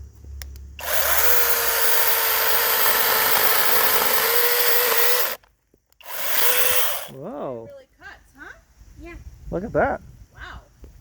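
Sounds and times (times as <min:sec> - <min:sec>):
mini chainsaw cutting branch: 0:00.8 - 0:05.4, 0:06.0 - 0:07.2.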